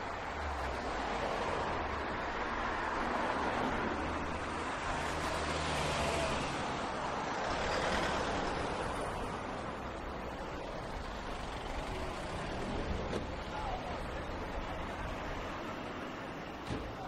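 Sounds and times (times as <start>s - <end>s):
passing vehicle hum: 0.0s - 16.6s
traffic noise: 0.0s - 17.0s.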